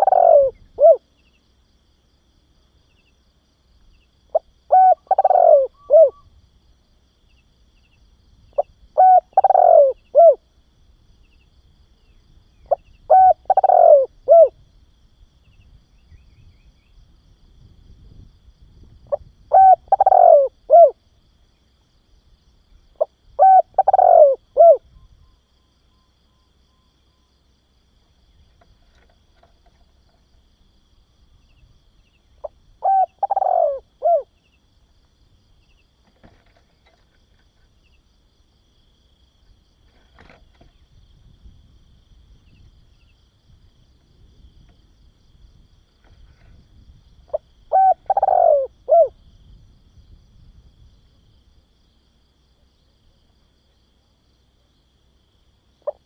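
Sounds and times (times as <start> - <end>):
dove cooing: 0.0 - 1.1, 4.3 - 6.3, 8.6 - 10.4, 12.6 - 14.6, 19.1 - 21.0, 23.0 - 24.9, 32.4 - 34.3, 47.3 - 49.2.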